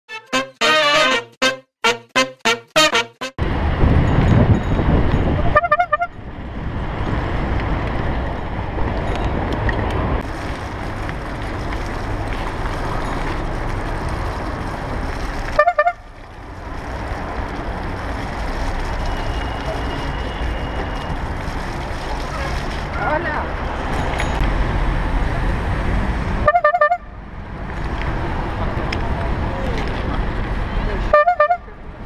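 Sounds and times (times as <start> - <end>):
bicycle horn honking: 0.1 - 3.4, 5.4 - 6.2, 15.6 - 16.1, 26.4 - 27.1, 31.2 - 31.7
steady traffic: 0.1 - 32.0
wind noise: 3.4 - 26.5.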